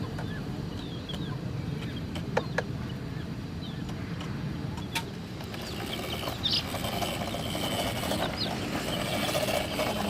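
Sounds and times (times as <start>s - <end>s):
chicks peeping: 0.0s - 4.0s, 4.8s - 10.0s
buzzing hum: 4.4s - 10.0s.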